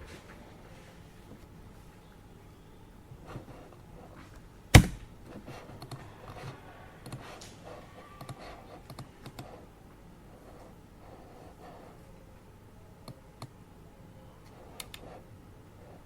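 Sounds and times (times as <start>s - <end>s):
loud sharp knock: 4.8s - 5.1s
computer keyboard typing: 8.2s - 9.5s.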